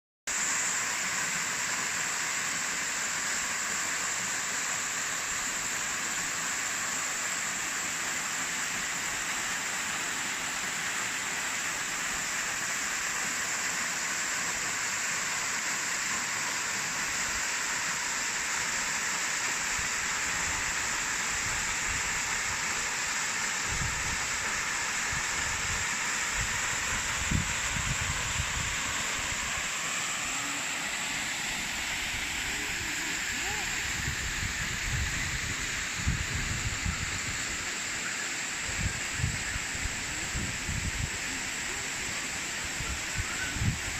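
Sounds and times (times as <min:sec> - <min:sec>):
waterfall rushing: 0:04.0 - 0:43.9.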